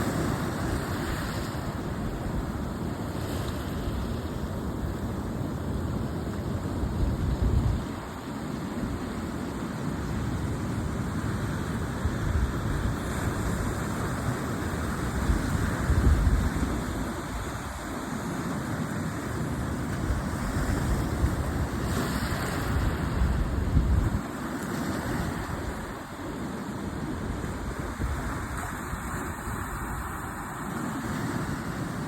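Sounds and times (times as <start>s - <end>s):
sea waves washing ashore: 0.0s - 32.0s
wind buffeting microphone: 11.4s - 18.1s, 19.1s - 24.3s.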